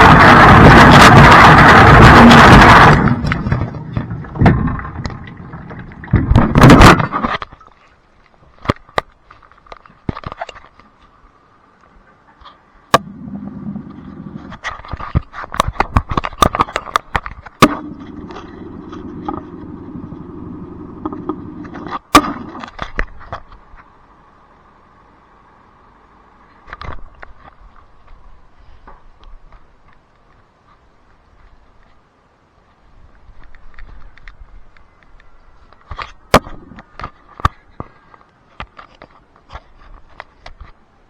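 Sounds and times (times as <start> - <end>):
low motor hum: 0.0 - 7.0, 12.9 - 14.6, 17.6 - 22.6
dishwasher water rush: 0.0 - 7.3
faint steady whine: 0.0 - 41.0.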